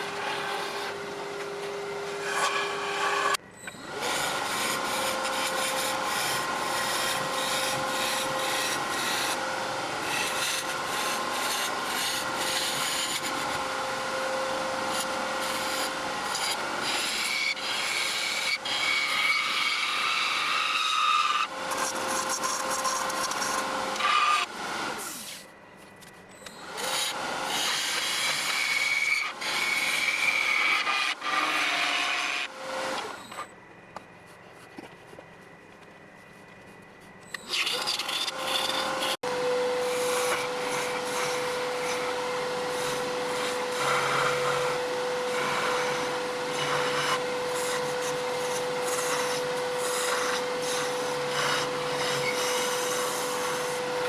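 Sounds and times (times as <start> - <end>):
tool scraping wood on lathe: 0.0 - 3.4, 4.0 - 13.8, 14.8 - 24.5, 26.8 - 33.4, 37.3 - 53.9
wood lathe running: 0.0 - 25.0, 26.7 - 33.2, 37.5 - 54.0.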